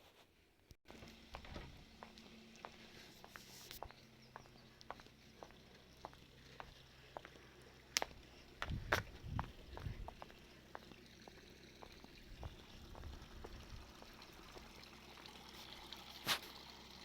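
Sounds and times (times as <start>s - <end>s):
faint trickling stream: 0.9s - 17.0s
light ticks: 7.9s - 8.2s.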